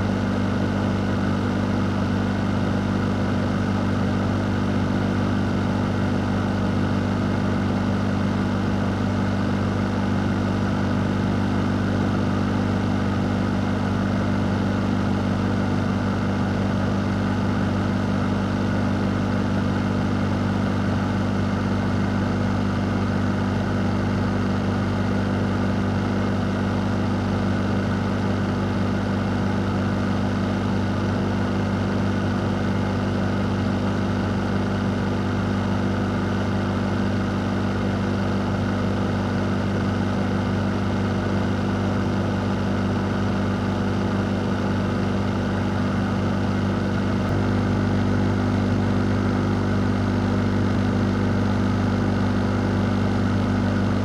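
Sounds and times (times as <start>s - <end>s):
fan motor hum: 0.0s - 54.0s
fan air noise: 29.0s - 54.0s.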